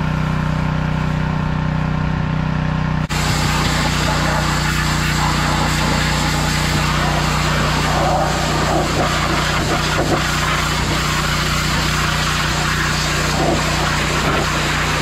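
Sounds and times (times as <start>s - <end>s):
pressure washer motor hum: 0.0s - 15.0s
water spray hissing: 3.1s - 15.0s.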